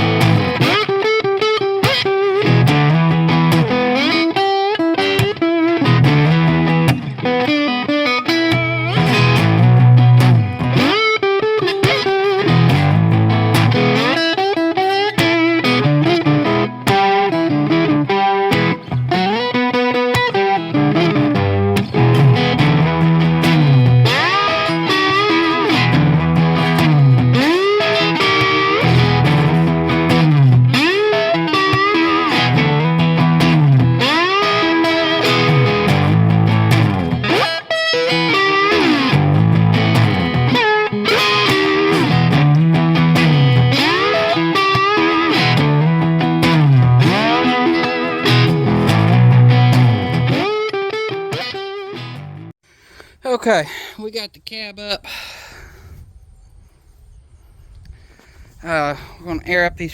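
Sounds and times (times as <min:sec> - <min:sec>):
distorted electric guitar riffs: 0:00.0 - 0:52.5.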